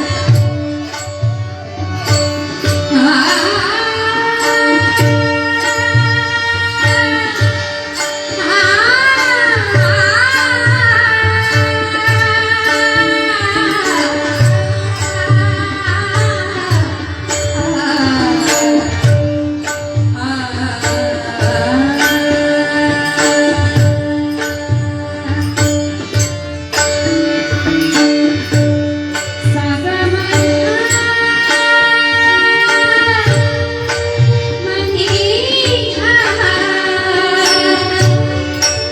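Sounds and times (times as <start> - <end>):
held accompanying notes: 0.0 - 38.9
person singing devotional song: 0.0 - 38.9
small hand cymbals: 0.0 - 38.9
hand drum beat: 32.6 - 36.6.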